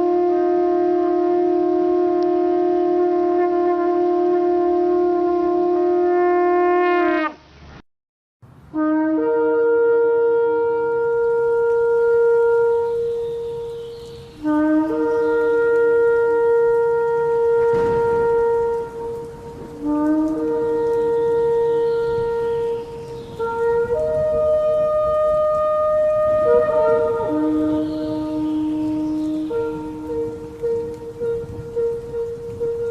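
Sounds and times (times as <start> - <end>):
ram's horn blasts: 8.7 - 32.9.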